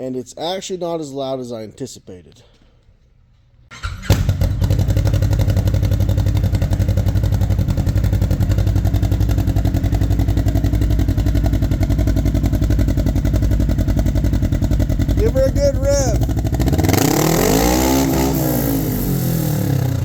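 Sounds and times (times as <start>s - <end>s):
engine idling: 4.1s - 20.0s.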